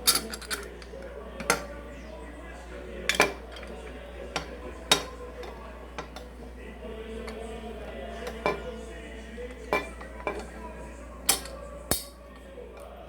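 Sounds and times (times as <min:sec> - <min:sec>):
metal parts clinking: 0:00.0 - 0:01.7, 0:11.2 - 0:12.5.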